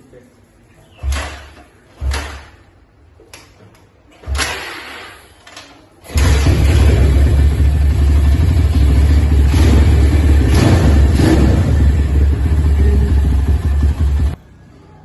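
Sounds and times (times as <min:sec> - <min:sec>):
motorcycle engine running: 0:06.2 - 0:14.4.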